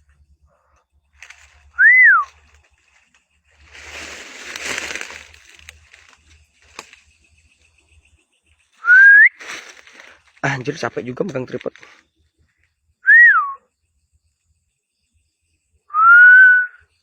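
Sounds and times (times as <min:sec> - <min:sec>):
loud clear whistle: 0:01.8 - 0:02.3, 0:08.8 - 0:09.4, 0:13.1 - 0:13.6, 0:15.9 - 0:16.8.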